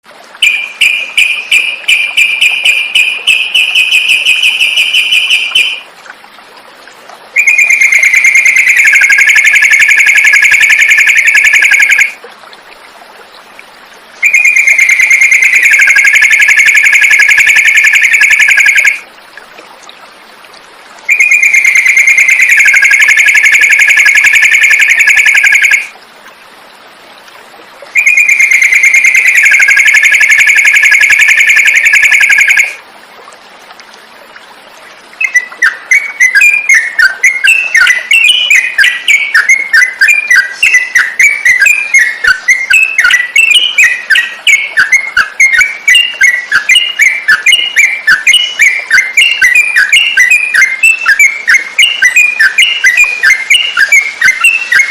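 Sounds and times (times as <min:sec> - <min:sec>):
bird chattering notes: 0:00.4 - 0:05.8.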